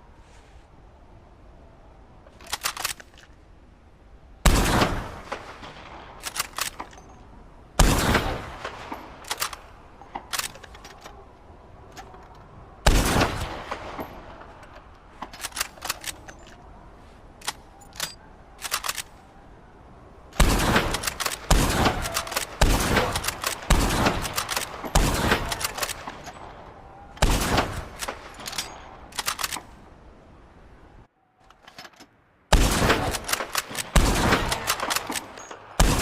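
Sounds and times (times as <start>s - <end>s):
rifle bolt clicking: 2.4s - 3.3s, 6.2s - 7.2s, 8.9s - 11.2s, 14.0s - 16.6s, 17.4s - 19.2s, 20.8s - 26.4s, 27.9s - 29.7s, 33.1s - 35.6s
rifle shots ringing: 7.8s - 11.1s, 12.8s - 14.7s, 20.4s - 29.6s, 32.5s - 36.0s.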